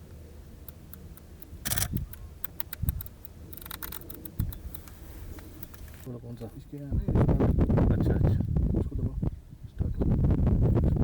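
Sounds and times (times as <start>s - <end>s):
camera clicks: 0.7s - 6.0s
rapid shutter clicks: 1.6s - 4.4s.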